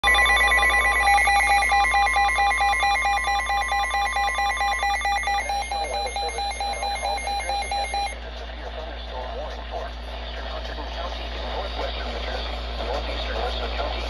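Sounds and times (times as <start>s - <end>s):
rapidly pulsing electronic beep: 0.0s - 8.2s
steady warning alarm tone: 0.0s - 8.2s.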